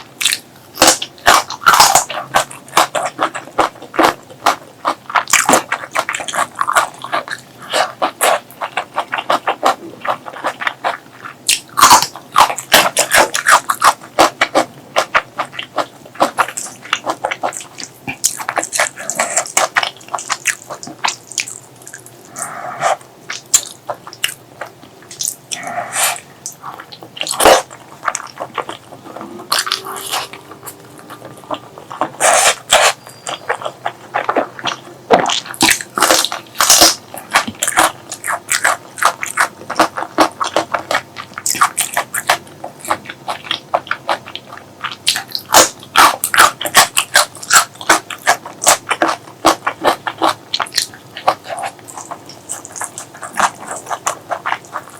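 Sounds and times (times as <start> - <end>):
wet chewing and lip-smacking: 0.0 - 54.9.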